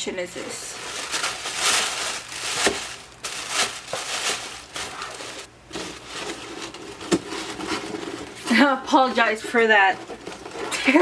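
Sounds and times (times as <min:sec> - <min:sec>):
paper packaging rustling: 0:00.7 - 0:08.5.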